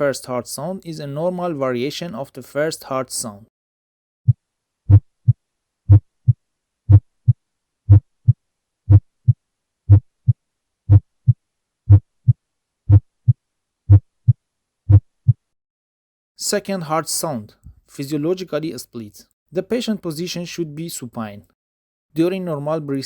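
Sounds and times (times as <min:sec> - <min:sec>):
heartbeat through stethoscope: 0:04.3 - 0:15.4.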